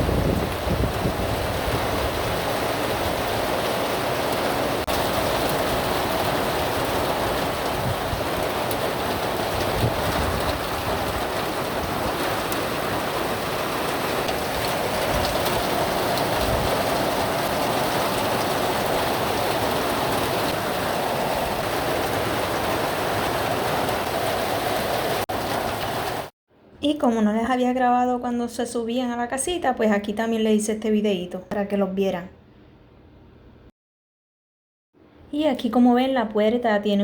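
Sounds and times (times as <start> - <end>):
heavy rain downpour: 0.0 - 26.3.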